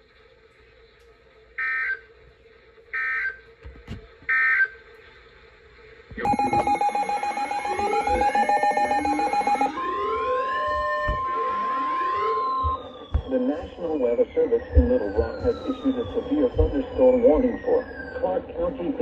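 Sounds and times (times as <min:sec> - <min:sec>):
loud steady alert tone: 0:06.2 - 0:09.8
siren-like sweeps: 0:06.3 - 0:18.5.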